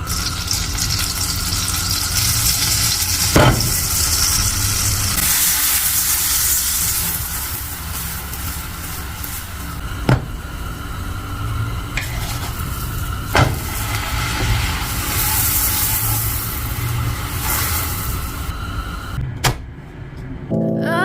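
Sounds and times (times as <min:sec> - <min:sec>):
sandwich sizzling in a pan: 0:00.0 - 0:09.8, 0:12.1 - 0:18.5.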